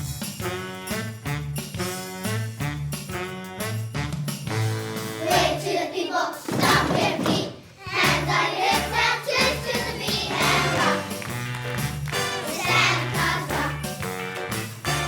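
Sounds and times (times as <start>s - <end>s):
children's choir singing: 5.2s - 11.3s, 12.3s - 14.0s.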